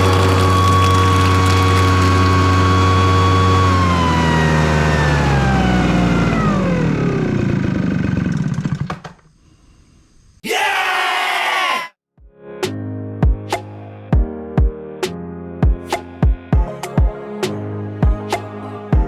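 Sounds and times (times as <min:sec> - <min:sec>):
small engine and blower fan: 0:00.0 - 0:09.4.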